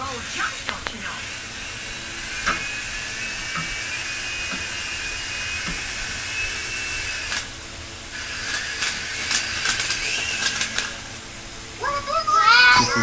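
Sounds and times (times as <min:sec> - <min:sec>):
toy helicopter motor whining: 0:00.0 - 0:11.2, 0:12.0 - 0:13.0
sharp clicks: 0:07.2 - 0:07.5, 0:08.4 - 0:11.0.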